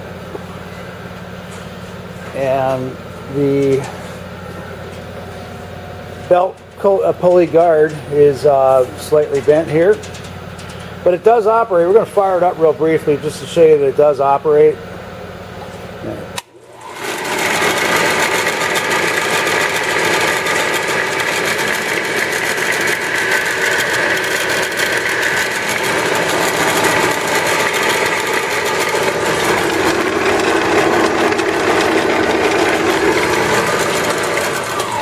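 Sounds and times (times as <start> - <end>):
belt and pulley whine: 15.5 - 35.0
drill press motor hum: 16.3 - 35.0.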